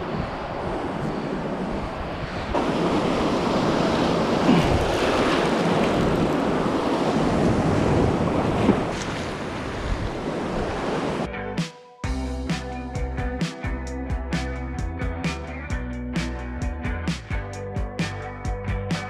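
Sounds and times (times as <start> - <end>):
surf breaking on beach: 0.0 - 11.3
wind buffeting microphone: 0.0 - 11.3.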